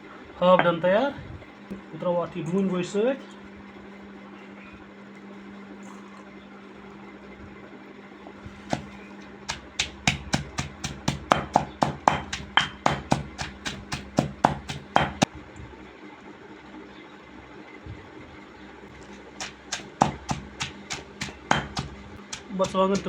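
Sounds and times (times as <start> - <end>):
pestle pounding in a mortar: 8.6 - 15.3, 19.3 - 23.0.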